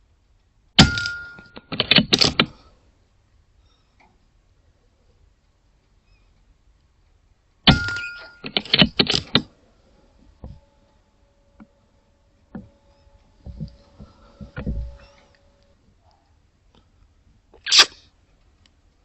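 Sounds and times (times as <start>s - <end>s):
faint steady whine: 0.0s - 19.0s
brief metallic ring: 7.7s - 8.4s
soft scattered taps: 13.4s - 15.0s
clattering knocks: 13.4s - 15.2s.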